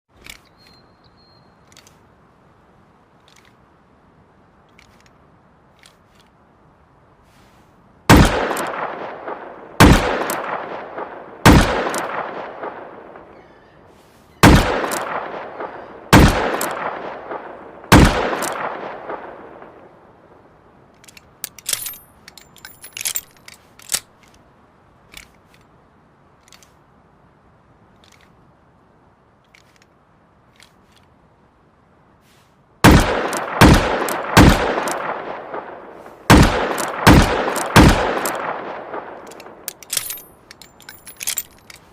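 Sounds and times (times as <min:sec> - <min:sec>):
light metallic clicks: 0:20.9 - 0:25.8, 0:36.3 - 0:41.9.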